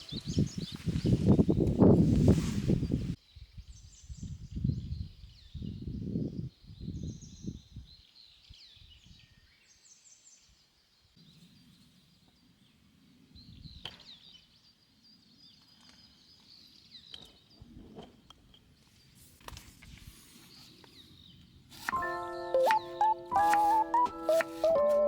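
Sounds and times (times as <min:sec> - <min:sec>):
songbirds chirping and trilling: 0:00.0 - 0:19.4.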